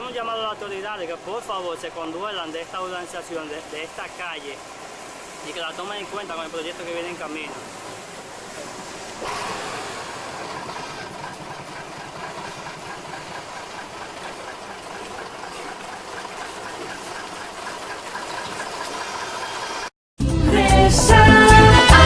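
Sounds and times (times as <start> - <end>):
engine idling: 0.0 - 19.9
upbeat salsa music: 20.2 - 22.0.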